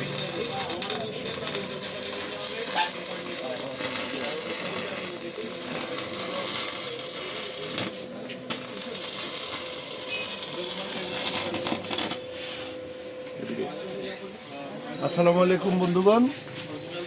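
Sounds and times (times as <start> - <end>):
welding arc crackling: 0.0 - 12.2.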